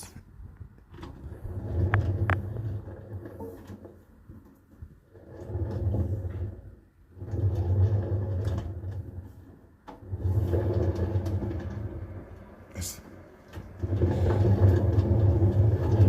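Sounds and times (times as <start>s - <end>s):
washing machine drum rumbling: 5.1s - 16.0s.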